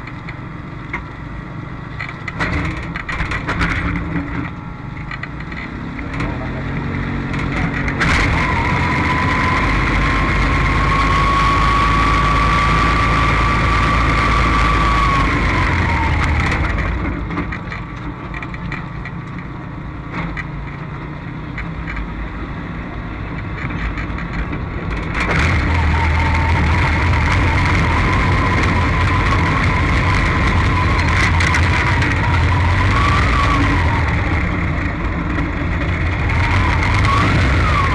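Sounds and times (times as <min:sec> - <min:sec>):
race car engine firing: 0:07.5 - 0:17.9, 0:25.0 - 0:37.9
high wheezing whine: 0:08.0 - 0:16.9, 0:25.2 - 0:37.9
low rumble: 0:08.0 - 0:17.7, 0:25.0 - 0:37.9.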